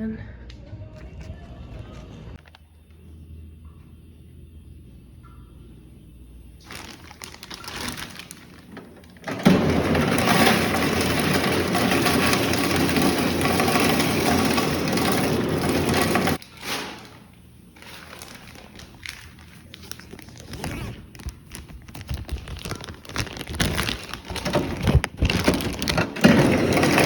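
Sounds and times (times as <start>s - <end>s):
ice cubes clattering into bag: 6.6s - 17.2s, 17.8s - 20.4s, 21.1s - 27.0s
handling sounds: 6.6s - 27.0s.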